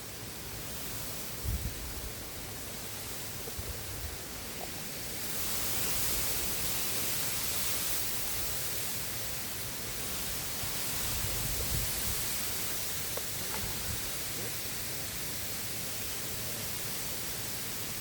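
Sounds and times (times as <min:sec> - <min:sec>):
rushing wind and river water: 0:00.0 - 0:18.0
wind buffeting microphone: 0:01.4 - 0:02.2, 0:11.0 - 0:12.6, 0:13.3 - 0:14.3.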